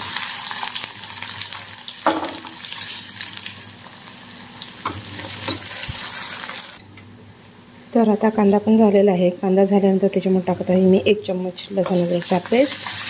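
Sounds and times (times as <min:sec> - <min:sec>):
onion sizzling in hot oil: 0:00.0 - 0:06.8, 0:11.6 - 0:13.0
spatula scraping pan: 0:11.8 - 0:13.0.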